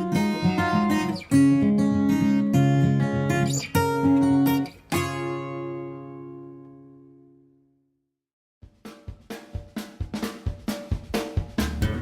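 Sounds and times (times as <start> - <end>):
acoustic guitar strumming chords: 0.0 - 7.4.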